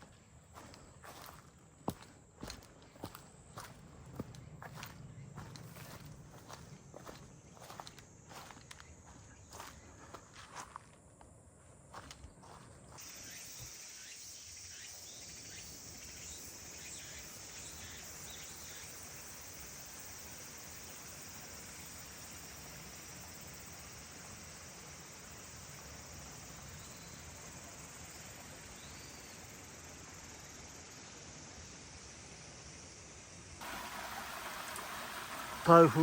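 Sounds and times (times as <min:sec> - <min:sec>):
high-pitched insect chorus: 0:00.0 - 0:36.0
stream water rushing: 0:33.6 - 0:36.0.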